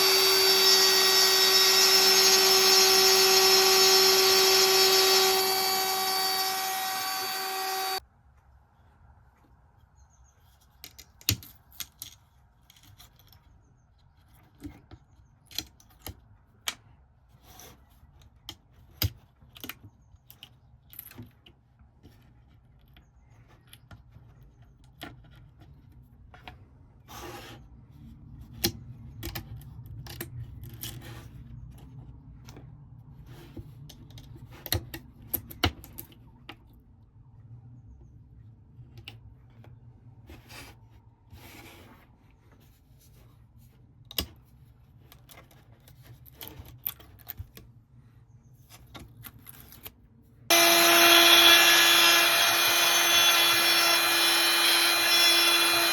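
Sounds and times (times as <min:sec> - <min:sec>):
cnc router whine: 0:00.0 - 0:08.0, 0:50.5 - 0:55.9
low hum: 0:50.5 - 0:55.9.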